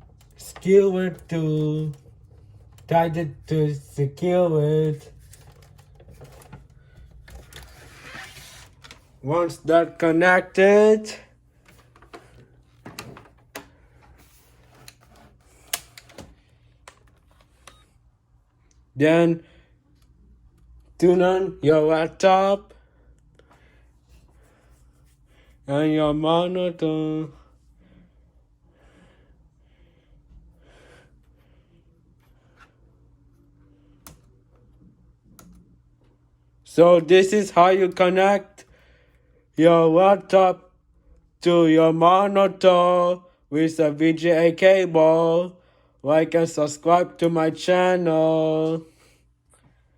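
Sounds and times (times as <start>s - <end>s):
cable handling clicks and taps: 4.8s - 7.7s, 14.6s - 17.8s.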